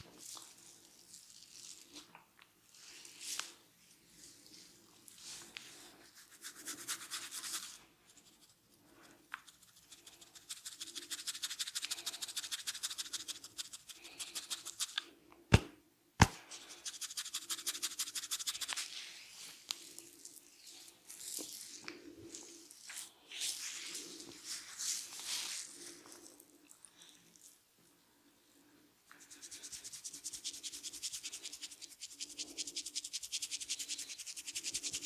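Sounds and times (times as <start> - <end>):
hands rubbing hair and scalp: 9.4 - 15.0, 16.2 - 19.8.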